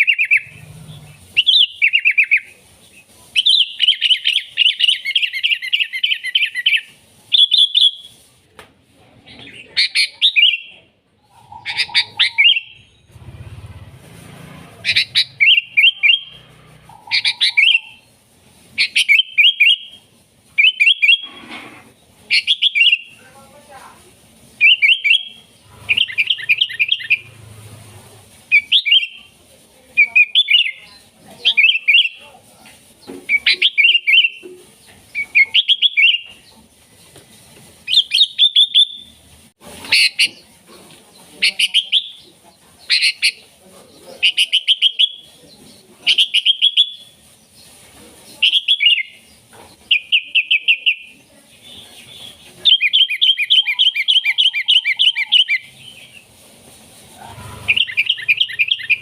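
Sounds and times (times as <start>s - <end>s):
bulbul singing bubbly phrases: 14.9s - 16.4s.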